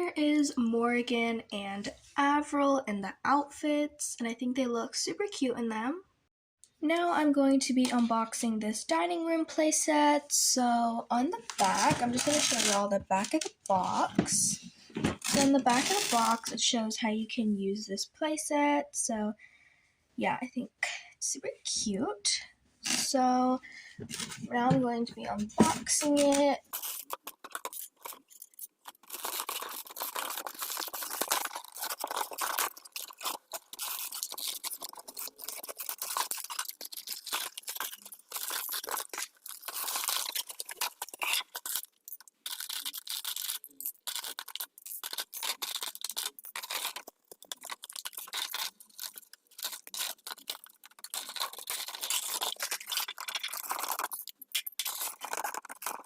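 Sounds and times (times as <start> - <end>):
packaging crinkling and tearing: 11.5 - 14.0, 15.1 - 16.5, 25.6 - 56.0.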